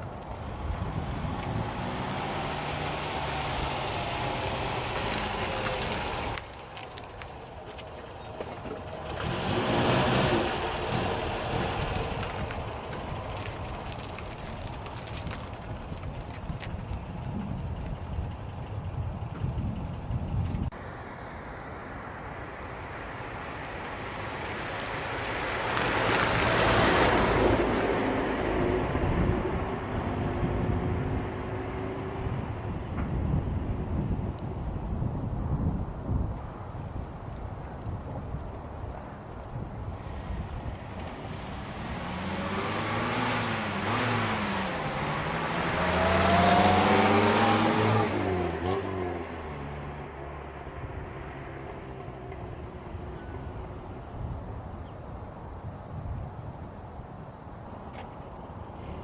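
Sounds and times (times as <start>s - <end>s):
tyre and road noise: 0.0s - 59.0s
car engine driving by: 0.3s - 18.6s, 40.0s - 53.9s
car driving past: 41.0s - 53.7s.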